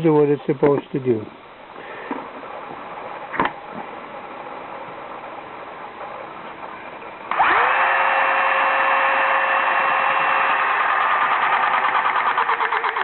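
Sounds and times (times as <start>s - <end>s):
pump motor whine: 3.3s - 13.0s.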